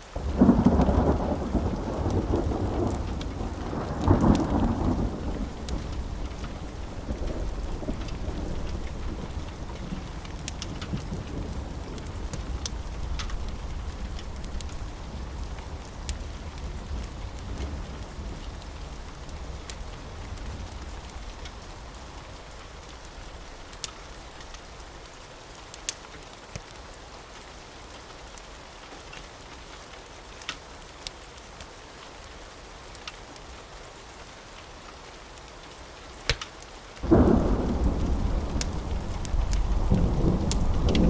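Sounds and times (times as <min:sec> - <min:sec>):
steady rain: 0:00.0 - 0:41.0
low thunder rumble: 0:00.2 - 0:23.8, 0:37.0 - 0:41.0
sharp pops: 0:36.3 - 0:36.5
loud thunder clap: 0:37.0 - 0:41.0.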